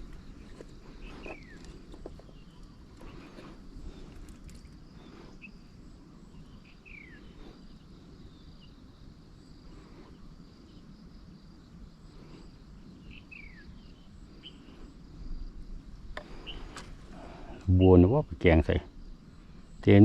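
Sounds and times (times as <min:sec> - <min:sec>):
bird chirping: 0:06.2 - 0:08.8, 0:12.9 - 0:14.8.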